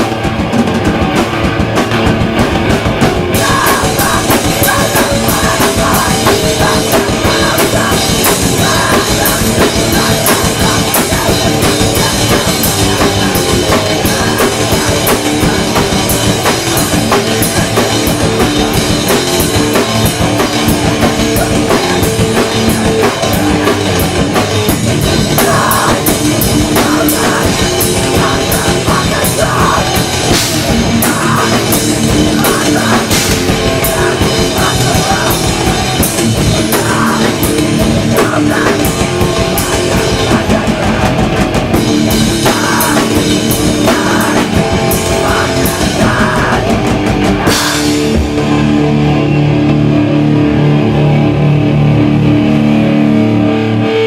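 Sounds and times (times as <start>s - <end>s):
punk band playing live: 0.0s - 54.0s.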